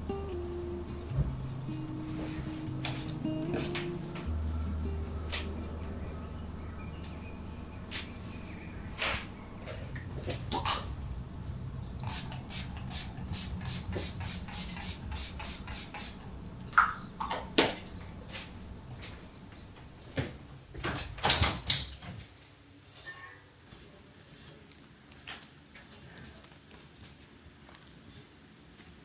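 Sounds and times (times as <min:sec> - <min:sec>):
steady low hum: 0:00.0 - 0:21.7.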